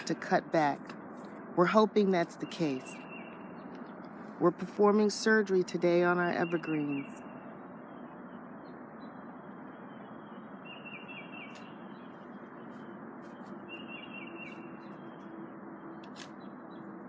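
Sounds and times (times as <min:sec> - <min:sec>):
steady background noise: 0:00.0 - 0:17.0
small bird chirping: 0:05.9 - 0:16.9.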